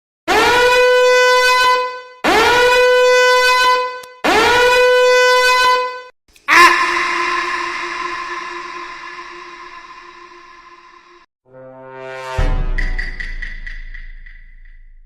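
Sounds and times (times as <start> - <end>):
long horn blasts: 0.3 - 6.1.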